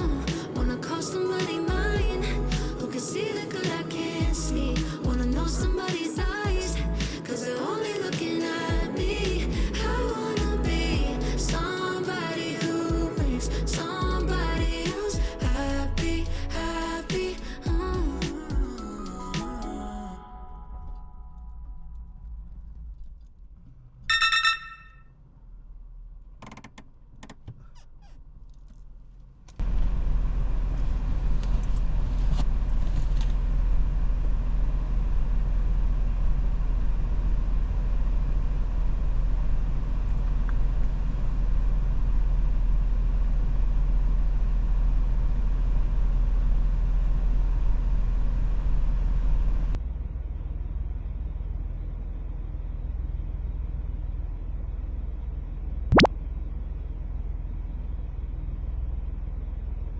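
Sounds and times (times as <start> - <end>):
car engine and road noise: 0.0 - 19.4, 20.7 - 59.9
short high tone: 24.1 - 25.0.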